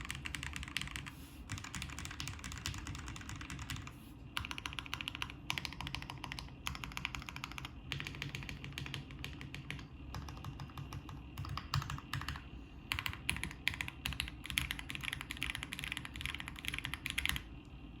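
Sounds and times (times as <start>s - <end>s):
mechanical keyboard typing: 0.0s - 17.5s.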